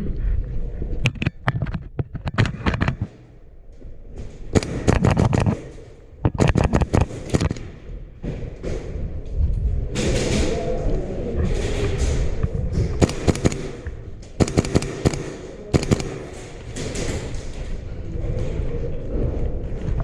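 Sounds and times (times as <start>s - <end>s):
airsoft guns firing: 4.5s - 7.9s, 13.0s - 17.4s.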